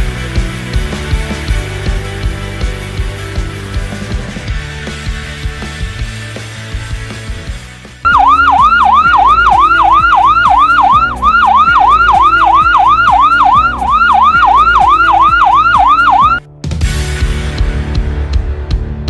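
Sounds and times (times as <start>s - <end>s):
ambulance siren yelping: 8.1s - 16.4s.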